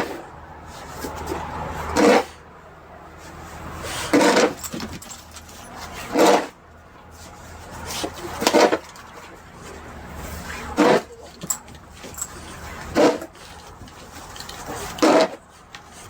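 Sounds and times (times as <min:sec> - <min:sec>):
snow shovel scraping: 0:00.8 - 0:02.4, 0:03.8 - 0:04.6, 0:05.9 - 0:06.6, 0:07.8 - 0:08.9, 0:10.2 - 0:11.3, 0:12.4 - 0:13.4, 0:14.6 - 0:16.0.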